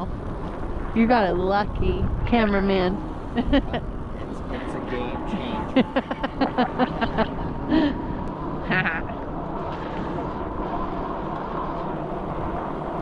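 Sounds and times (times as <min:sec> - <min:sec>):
faint steady whine: 0:00.0 - 0:13.0
wind and riding noise: 0:00.0 - 0:13.0
person laughing: 0:03.4 - 0:03.8, 0:05.4 - 0:09.2.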